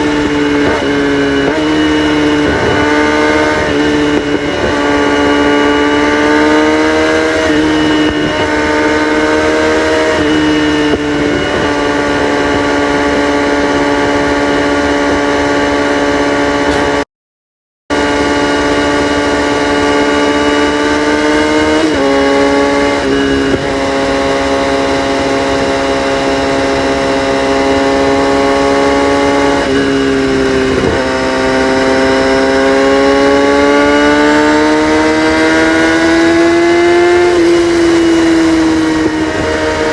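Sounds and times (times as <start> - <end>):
motorcycle engine at high revs: 0.0 - 17.0, 17.9 - 39.9.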